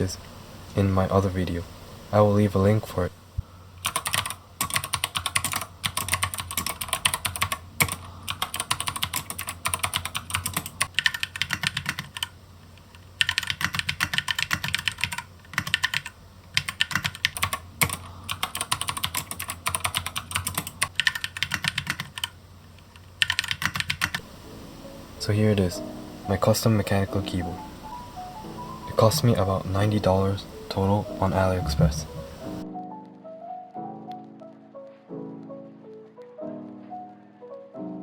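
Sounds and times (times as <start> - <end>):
mechanical keyboard typing: 3.8 - 12.3, 12.9 - 22.3, 22.9 - 24.2.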